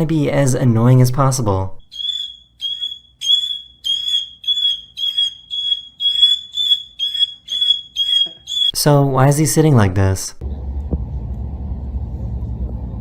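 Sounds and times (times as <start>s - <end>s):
bird calling shrill beeps: 1.8s - 8.8s.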